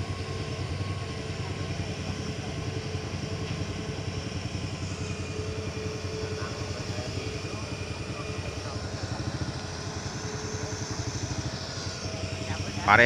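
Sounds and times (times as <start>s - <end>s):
engine running steadily: 0.0s - 13.0s.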